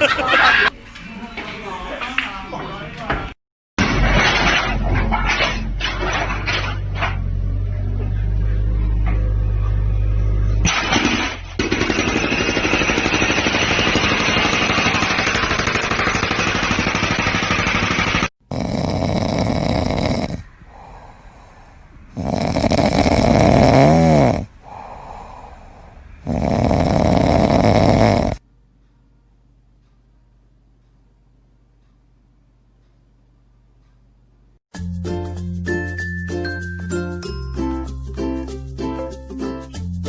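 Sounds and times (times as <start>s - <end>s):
animal snoring rattly: 11.6s - 28.4s
quiet breaths: 18.5s - 23.5s, 24.3s - 29.1s.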